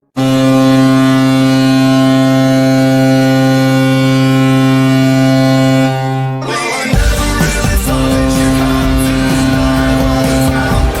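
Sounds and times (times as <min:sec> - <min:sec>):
hockey goal horn blast: 0:00.0 - 0:11.0
music: 0:06.4 - 0:11.0.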